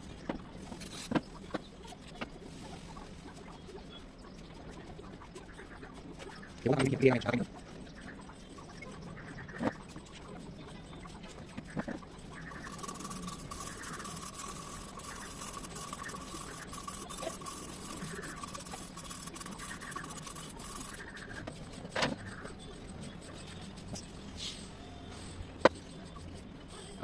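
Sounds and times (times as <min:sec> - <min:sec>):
faint steady whine: 0:00.0 - 0:27.0
abrasive rubbing on metal: 0:12.4 - 0:27.0.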